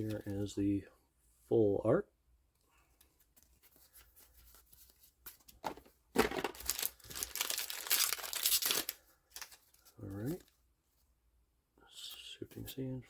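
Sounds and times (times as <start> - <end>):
cards being handled: 0.0 - 0.5, 2.8 - 10.5
wrapper torn and crinkled: 6.2 - 9.8.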